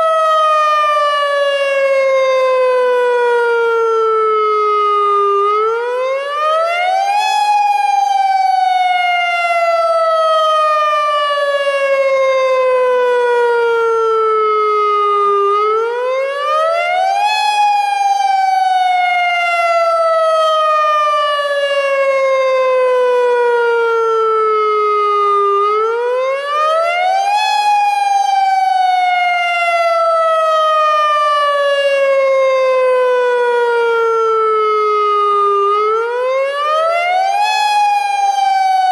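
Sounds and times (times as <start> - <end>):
wailing siren: 0.0 - 38.9.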